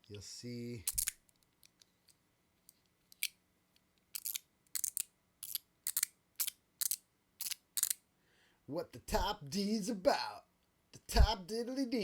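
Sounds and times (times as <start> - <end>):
metal fidget toy clicking: 4.1 - 8.0.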